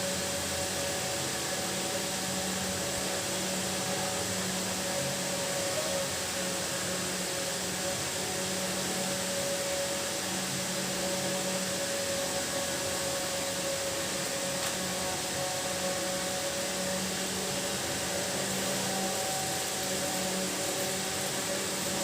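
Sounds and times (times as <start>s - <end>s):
mechanical hum and hiss: 0.0s - 22.0s.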